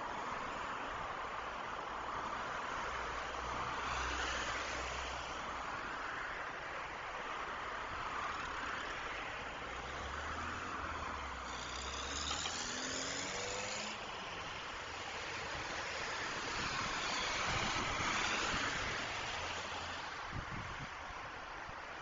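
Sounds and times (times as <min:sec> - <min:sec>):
tyre noise of passing cars: 0:00.0 - 0:22.0
vehicle whine gliding in pitch: 0:09.8 - 0:19.9.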